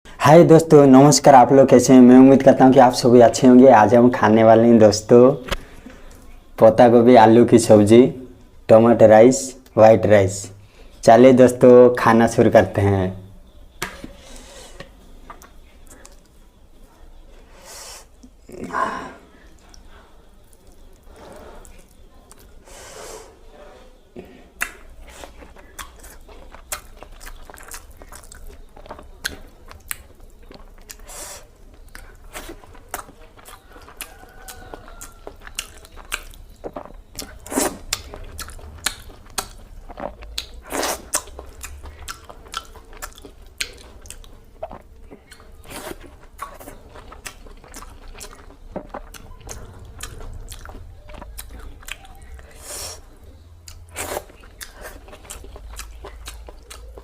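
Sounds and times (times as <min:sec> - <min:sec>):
low steady hum: 0:00.1 - 0:57.0
chewing and mouth noises: 0:13.5 - 0:16.4, 0:19.4 - 0:22.7, 0:24.6 - 0:57.0.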